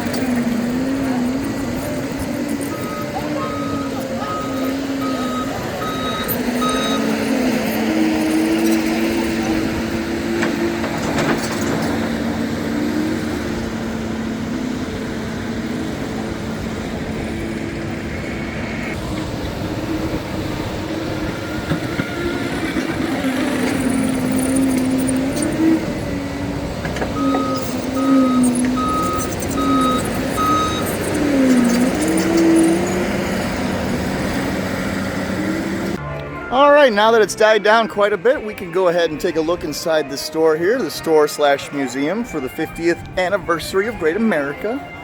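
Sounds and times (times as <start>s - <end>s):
construction vehicle engine running: 0.0s - 45.0s
backup alarm beeping: 0.7s - 8.3s, 27.1s - 33.5s.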